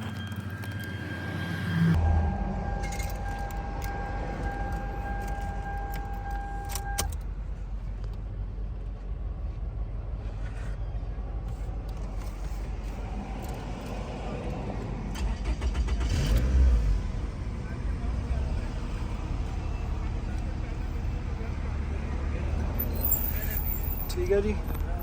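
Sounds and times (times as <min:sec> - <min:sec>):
steady high tone: 0:00.0 - 0:07.0
steady low rumble: 0:01.9 - 0:15.1.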